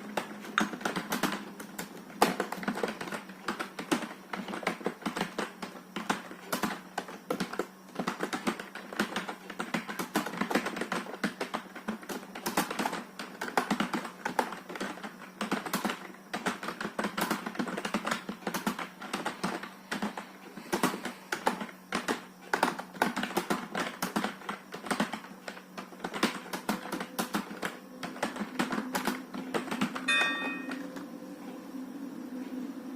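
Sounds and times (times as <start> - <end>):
typing on keyboard: 0.0 - 31.0
brief electronic tone: 30.0 - 31.6.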